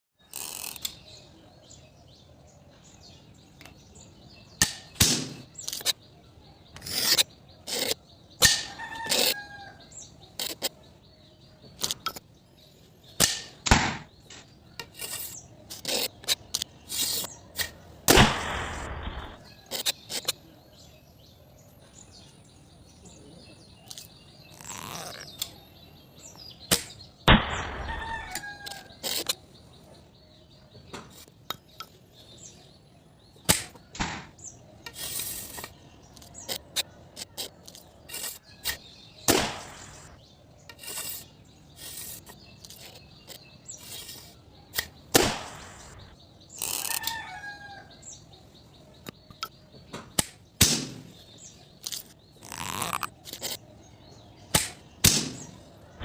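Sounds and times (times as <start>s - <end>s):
faint bird chirps: 0.2s - 13.2s.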